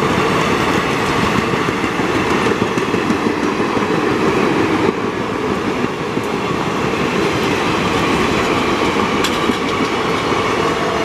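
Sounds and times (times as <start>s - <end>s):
passenger train rumbling: 0.0s - 11.0s
wheels clattering over rails: 7.4s - 10.4s.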